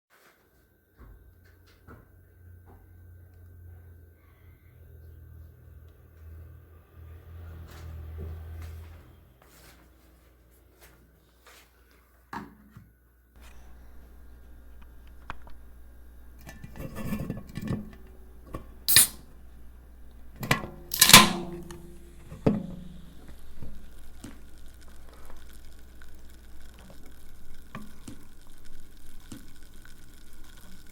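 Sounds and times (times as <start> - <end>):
can clicking: 13.4 - 28.7
drink fizzing: 13.4 - 30.9
gas hissing: 13.4 - 30.9
can tab cracking open: 16.3 - 19.4, 20.3 - 25.7.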